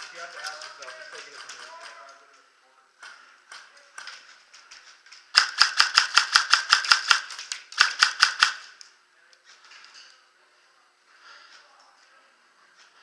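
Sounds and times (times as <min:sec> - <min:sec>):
airsoft gun shots: 0:05.4 - 0:08.7.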